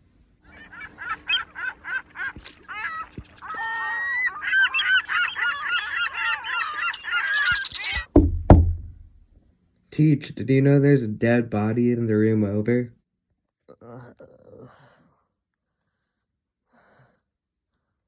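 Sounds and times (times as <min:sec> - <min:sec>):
geese honking: 0:00.5 - 0:08.1.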